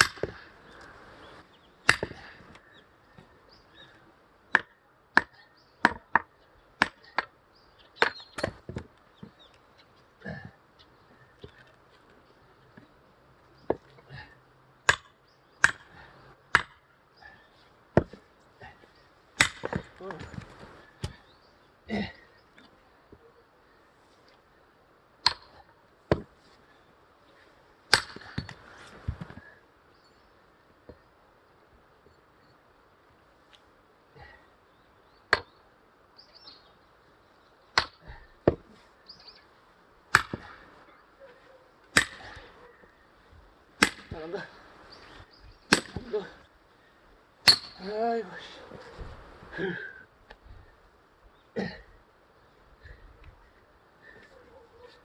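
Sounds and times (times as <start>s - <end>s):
axe chopping firewood: 0.0s - 0.5s, 1.8s - 2.6s, 4.5s - 7.3s, 8.0s - 8.9s, 14.8s - 16.9s, 17.9s - 18.3s, 19.4s - 21.2s, 25.2s - 26.4s, 27.9s - 29.4s, 35.3s - 35.6s, 37.7s - 38.8s, 40.1s - 40.7s, 41.9s - 42.6s, 43.8s - 44.4s, 45.7s - 46.4s, 47.4s - 47.8s.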